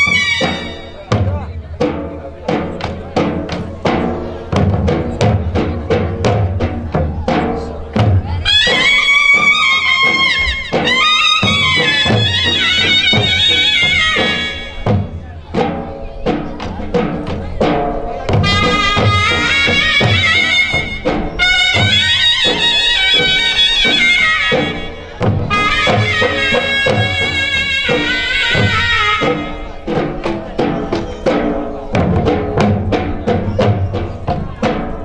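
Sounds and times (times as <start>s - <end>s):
brass-like lead melody: 0.0s - 1.1s, 8.4s - 15.0s, 18.4s - 29.7s
drum beats: 0.0s - 35.0s.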